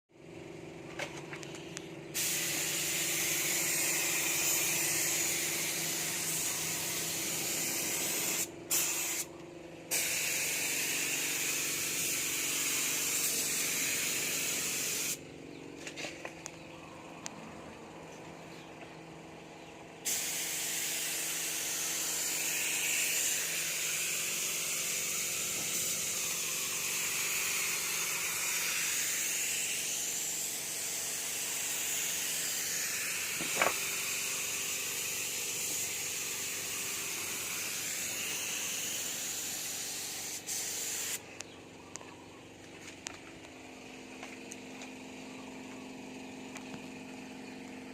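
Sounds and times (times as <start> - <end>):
steady low hum: 0.1 - 47.9
hiss of spraying air: 2.1 - 9.3, 9.9 - 15.2, 20.0 - 41.3.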